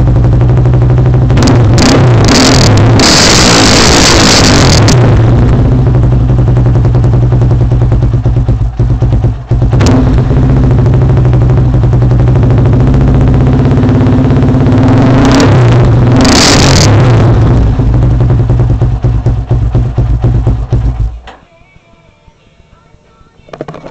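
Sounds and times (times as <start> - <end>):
atv engine running and revving: 0.0 - 21.2.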